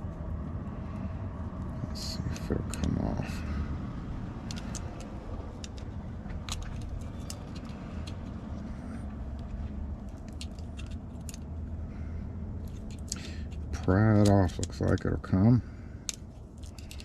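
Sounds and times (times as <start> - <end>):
steady low rumble: 0.0 - 17.0
metal lock parts clicking: 4.4 - 8.3, 10.0 - 11.5, 12.6 - 15.2, 16.0 - 17.0.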